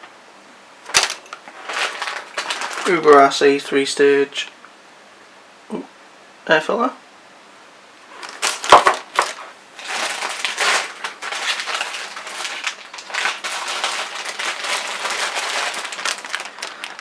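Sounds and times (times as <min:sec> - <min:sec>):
packaging crinkling: 0:00.8 - 0:03.8, 0:08.1 - 0:17.0.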